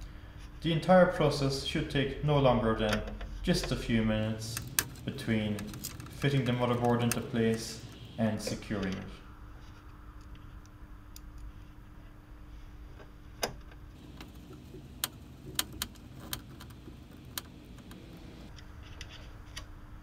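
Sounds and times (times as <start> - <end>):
faint steady hum: 0.0 - 19.7
metallic clicks of screws: 4.4 - 8.1.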